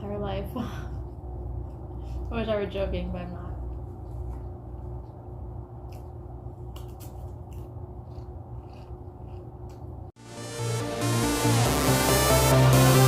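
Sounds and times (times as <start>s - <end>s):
low room hum: 0.0s - 10.2s
person chewing crisply: 0.9s - 2.3s, 3.6s - 10.2s
electronic dance music: 10.2s - 13.0s.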